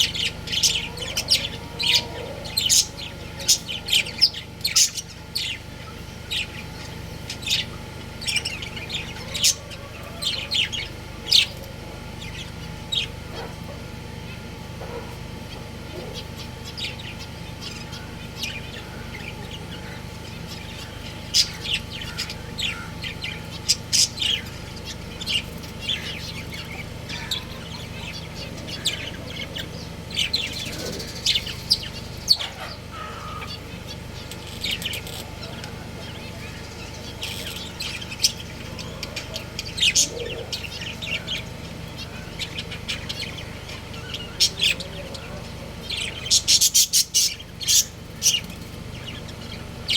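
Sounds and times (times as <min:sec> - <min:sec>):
budgerigars chirping: 0:00.0 - 0:49.9
steady low hum: 0:00.0 - 0:49.9.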